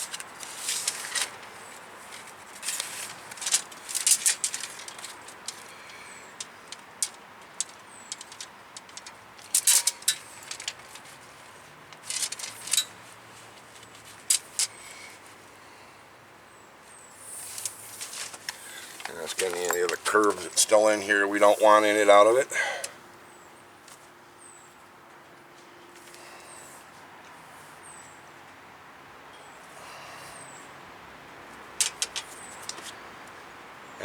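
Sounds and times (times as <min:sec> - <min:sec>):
metal line clicking and tapping: 0:03.4 - 0:11.0, 0:31.8 - 0:32.9.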